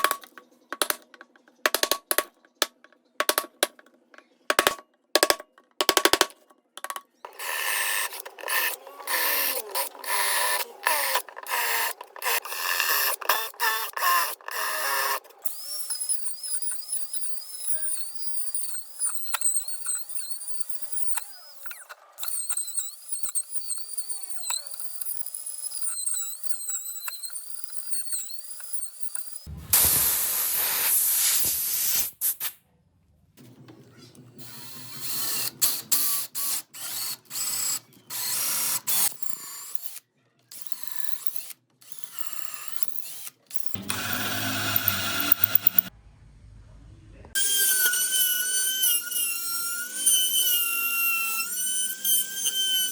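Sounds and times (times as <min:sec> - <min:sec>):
electric power drill running: 0:07.3 - 0:30.4, 0:34.4 - 0:45.9, 0:47.4 - 0:52.9.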